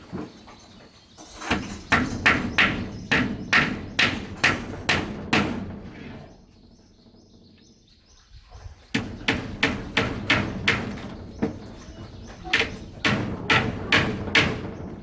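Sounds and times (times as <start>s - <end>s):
hand tool striking wood: 1.4s - 5.8s, 9.0s - 11.6s, 12.5s - 14.8s.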